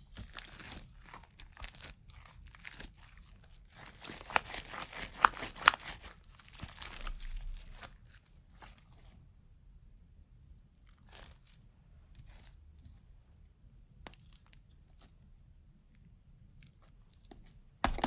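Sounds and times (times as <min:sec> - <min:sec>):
slime crackling and squishing: 0:00.0 - 0:09.2, 0:10.7 - 0:12.8.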